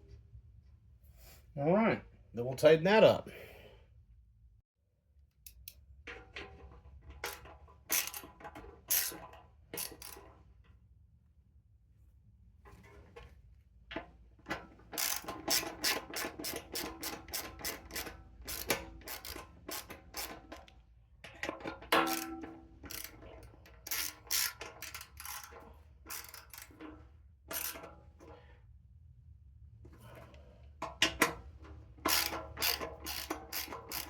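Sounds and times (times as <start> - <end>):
ratchet wrench clicking: 7.9 - 8.3, 8.9 - 9.2, 9.8 - 10.2, 15.0 - 20.7, 22.0 - 26.8, 27.5 - 27.9, 32.0 - 34.0.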